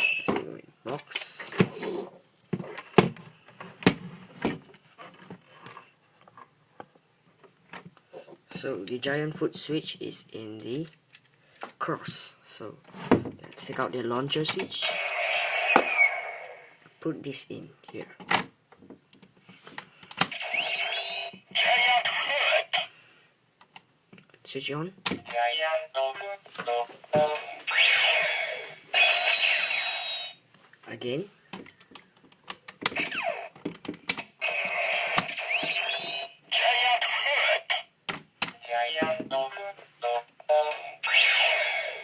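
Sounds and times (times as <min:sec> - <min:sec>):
toy electronic sound effects: 0:00.0 - 0:00.4, 0:14.8 - 0:16.8, 0:20.3 - 0:22.9, 0:27.2 - 0:30.4, 0:32.9 - 0:33.6, 0:34.3 - 0:37.9, 0:40.5 - 0:42.0
recorded voice call: 0:13.5 - 0:18.2, 0:20.3 - 0:23.0, 0:24.4 - 0:31.4, 0:34.4 - 0:37.9, 0:38.6 - 0:42.0.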